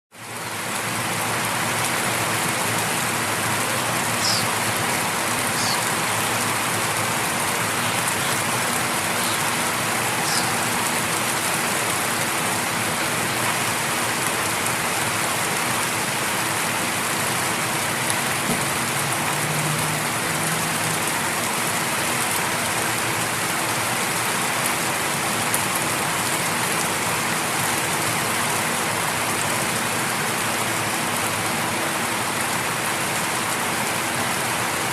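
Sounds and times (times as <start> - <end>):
light rain on leaves and concrete: 0.1 - 34.9
distant traffic hum: 0.5 - 22.8
birds chirping: 3.2 - 13.7.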